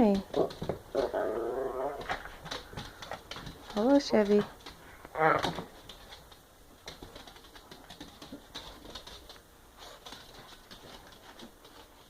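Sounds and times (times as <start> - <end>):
dog claws tapping hard floor: 0.0 - 1.2, 1.8 - 12.0.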